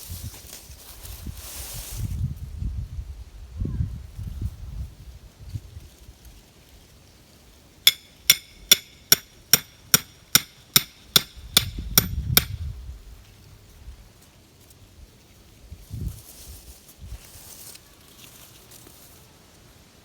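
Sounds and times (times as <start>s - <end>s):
hammer driving stake into ground: 7.9s - 12.6s.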